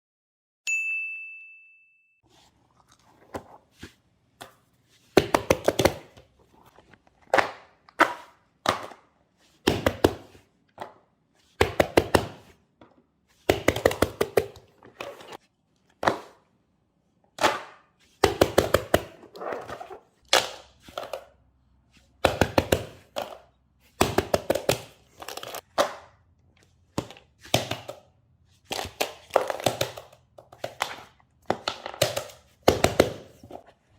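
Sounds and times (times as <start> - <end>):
short high ding: 0.6 - 2.2.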